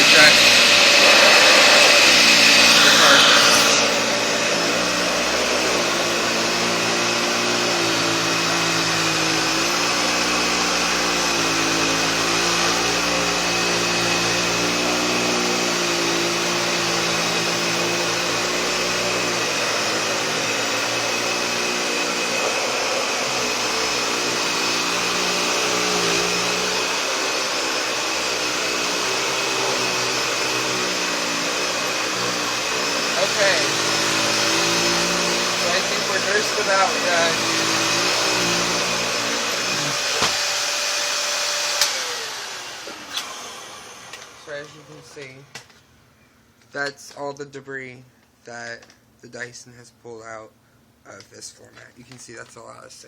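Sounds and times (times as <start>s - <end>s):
vacuum cleaner running: 0.0s - 45.5s.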